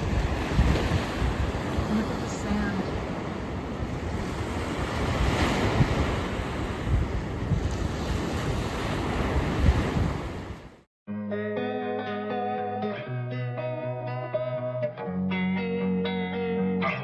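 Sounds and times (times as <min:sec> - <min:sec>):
wind buffeting microphone: 0:00.0 - 0:10.8
ocean surf washing in: 0:00.0 - 0:10.9
guitar music: 0:11.1 - 0:17.0.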